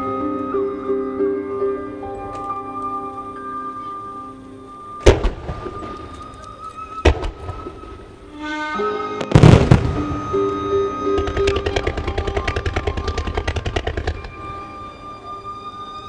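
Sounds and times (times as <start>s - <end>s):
firework crackling pops: 5.0s - 8.3s, 9.2s - 14.8s
fireworks bursting: 5.0s - 8.6s, 9.2s - 14.9s.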